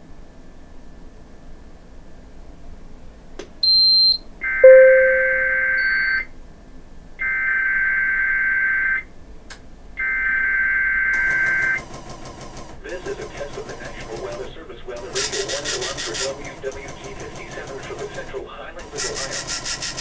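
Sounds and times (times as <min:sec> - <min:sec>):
brief low tone: 0:04.6 - 0:06.0
short high beep: 0:04.6 - 0:06.2.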